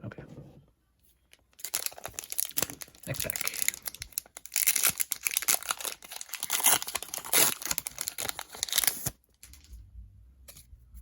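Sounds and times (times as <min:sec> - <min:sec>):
foil wrapper crinkling: 0:01.5 - 0:09.6.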